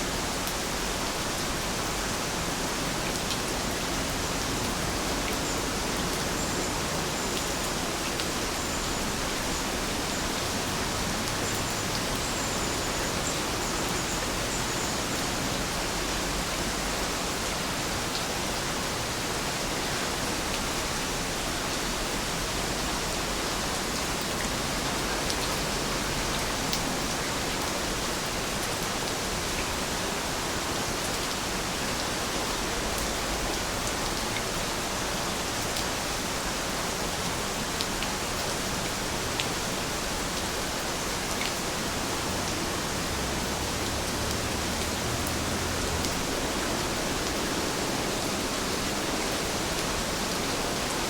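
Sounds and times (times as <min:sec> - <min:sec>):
steady rain hiss: 0:00.0 - 0:51.0.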